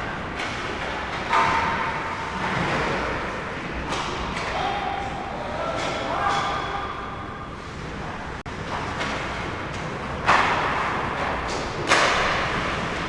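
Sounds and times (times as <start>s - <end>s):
hockey sticks knocking puck: 8.7s - 12.6s.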